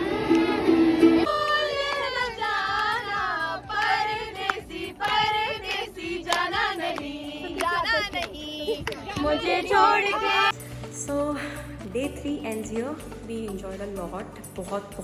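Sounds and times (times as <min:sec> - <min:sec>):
women singing together: 0:00.0 - 0:10.6.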